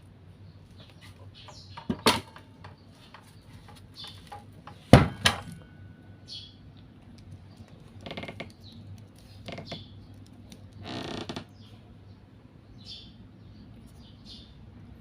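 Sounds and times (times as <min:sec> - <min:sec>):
low steady hum: 0:00.0 - 0:15.0
creaks and rattles of handling: 0:00.7 - 0:05.6, 0:07.0 - 0:11.6.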